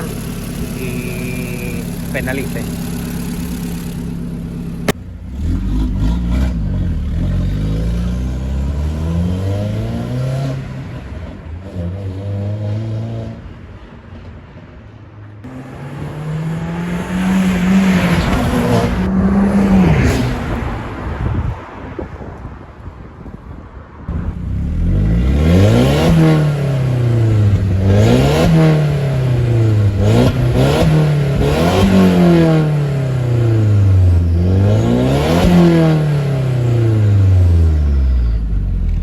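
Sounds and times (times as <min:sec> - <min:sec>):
car engine accelerating: 0:00.0 - 0:13.6, 0:15.4 - 0:22.2, 0:24.1 - 0:39.0.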